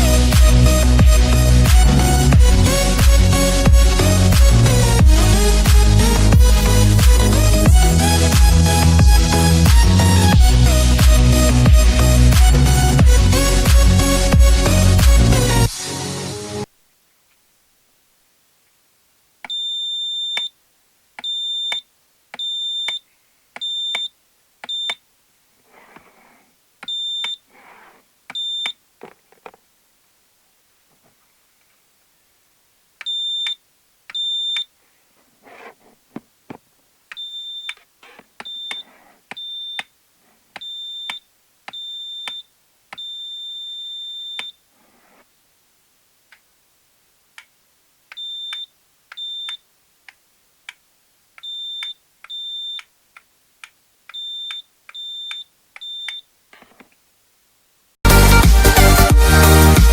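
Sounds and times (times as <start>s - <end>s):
loud electronic music: 0.0s - 16.6s, 58.1s - 59.9s
doorbell buzzer beeping: 19.5s - 20.6s, 21.2s - 21.8s, 22.4s - 23.0s, 23.6s - 24.1s, 26.9s - 27.4s, 28.4s - 28.8s, 33.1s - 33.6s, 34.2s - 34.7s, 37.2s - 37.8s, 38.5s - 39.9s, 40.6s - 44.6s, 48.2s - 49.6s, 51.5s - 52.8s, 54.2s - 56.2s.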